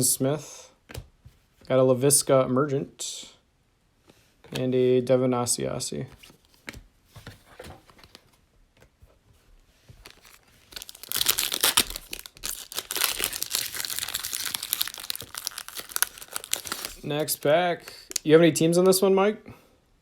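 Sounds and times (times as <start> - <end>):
wrapper tearing and crinkling: 10.0 - 18.3.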